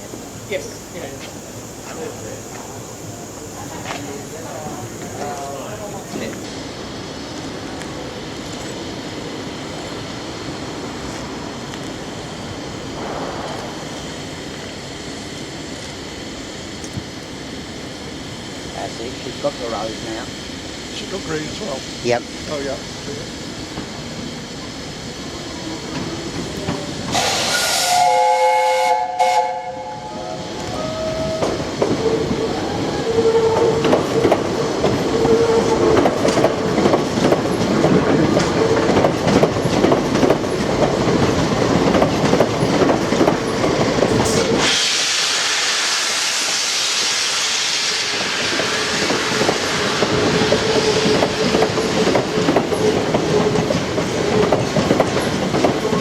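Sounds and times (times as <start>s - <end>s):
steam train running: 0.0s - 56.0s
strong steam hiss: 0.0s - 56.0s
steam locomotive whistle: 27.1s - 33.8s, 44.3s - 51.5s.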